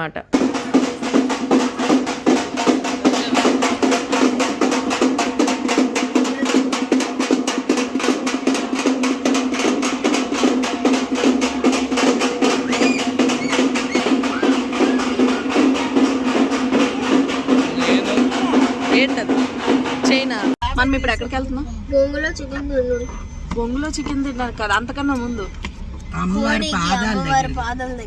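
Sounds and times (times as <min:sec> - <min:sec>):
fast percussion drumming: 0:00.3 - 0:21.5.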